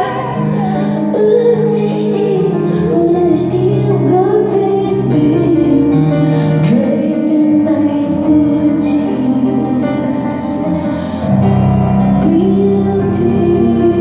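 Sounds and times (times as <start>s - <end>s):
woman singing a slow song: 0.0s - 14.0s.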